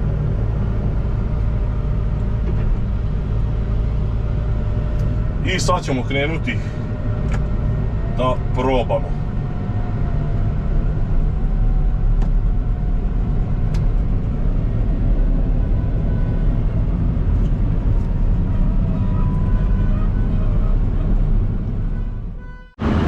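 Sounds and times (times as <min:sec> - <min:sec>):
combine harvester engine drone: 0:00.0 - 0:23.0.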